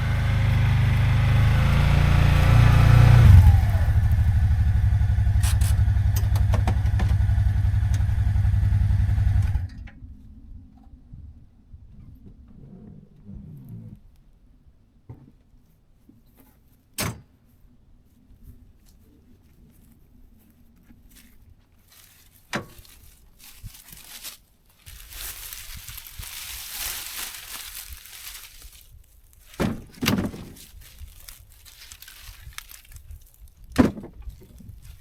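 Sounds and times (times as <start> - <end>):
rustling crunching noise: 1.0 - 4.3, 18.4 - 35.0
sharp thunks and knocks: 29.5 - 30.8, 33.7 - 34.5.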